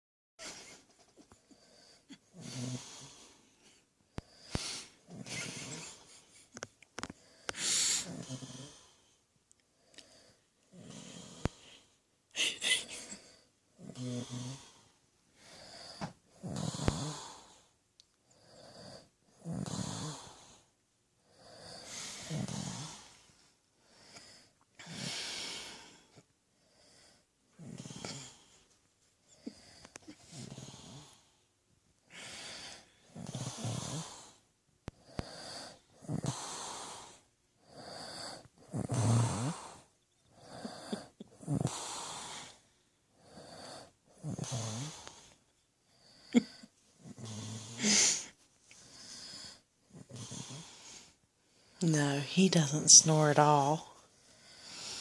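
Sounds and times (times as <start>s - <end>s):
wheezy breaths: 0.4s - 9.2s, 9.8s - 31.3s, 32.0s - 51.8s, 53.9s - 55.0s
man snoring: 1.7s - 3.3s, 7.2s - 9.0s, 10.1s - 11.7s, 12.9s - 17.7s, 18.4s - 20.6s, 21.3s - 23.2s, 23.9s - 28.5s, 29.4s - 31.3s, 32.1s - 34.4s, 35.0s - 42.6s, 43.2s - 45.3s, 46.0s - 50.8s.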